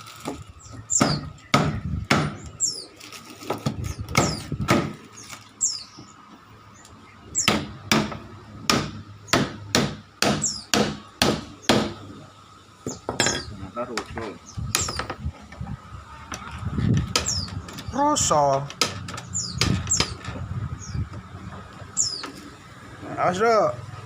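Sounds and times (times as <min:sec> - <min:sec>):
nails squeaking: 0:12.9 - 0:13.6, 0:16.4 - 0:20.5.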